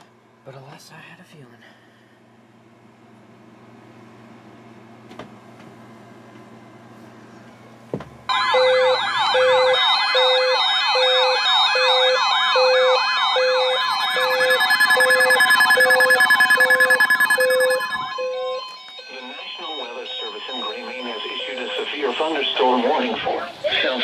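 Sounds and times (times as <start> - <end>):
fast wobbling siren tone: 13.2 - 18.1
steady high tone: 13.8 - 18.2
short beeps: 13.9 - 18.2.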